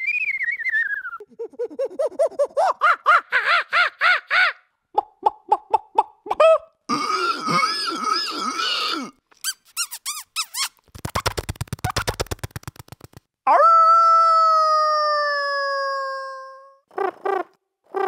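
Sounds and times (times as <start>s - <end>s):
whistled mouth chirps: 0.0s - 1.2s
squeaky mouth warbling: 7.4s - 11.2s.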